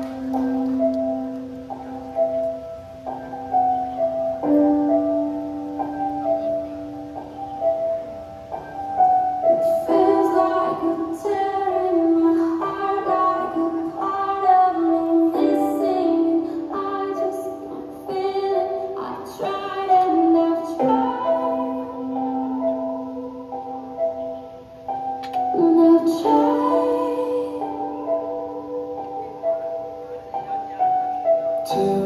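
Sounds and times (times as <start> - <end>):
keyboard accompaniment: 0.0 - 32.0
woman singing pop song: 9.6 - 23.2, 25.4 - 29.0, 31.6 - 32.0.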